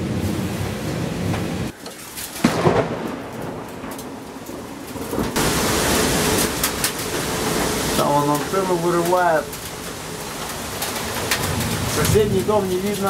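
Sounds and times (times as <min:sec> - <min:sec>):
heavy rain: 0:00.0 - 0:13.0
thunder crack: 0:02.4 - 0:13.0.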